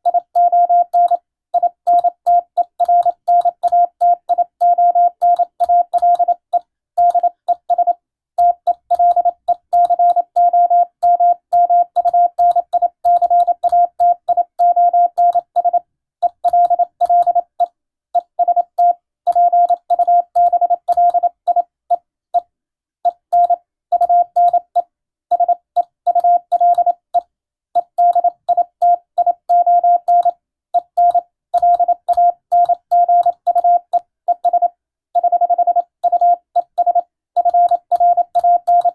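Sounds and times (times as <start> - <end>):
morse code tone: 27.8 - 38.9.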